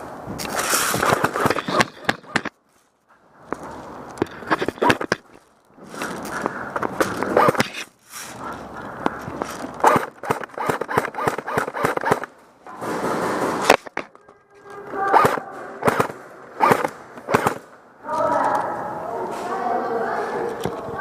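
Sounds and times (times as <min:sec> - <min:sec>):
players moving in gear: 0:00.4 - 0:02.5, 0:03.4 - 0:18.7
airsoft guns firing: 0:00.9 - 0:02.5, 0:09.8 - 0:14.0, 0:15.0 - 0:17.8.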